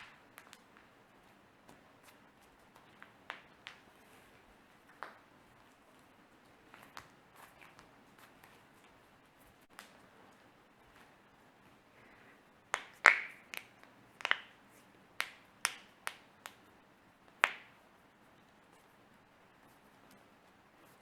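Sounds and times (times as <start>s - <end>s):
knuckles cracking: 1.7s - 3.9s, 12.7s - 16.7s, 17.3s - 17.8s.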